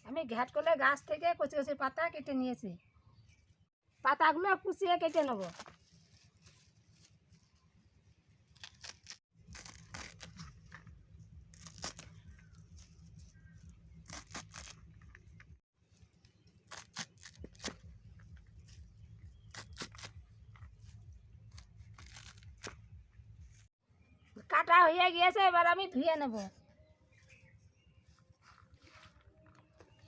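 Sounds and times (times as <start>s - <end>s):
blade chopping leaves: 8.6s - 10.8s, 11.5s - 12.9s, 14.0s - 14.9s, 16.6s - 17.9s, 19.4s - 20.4s, 21.5s - 22.9s.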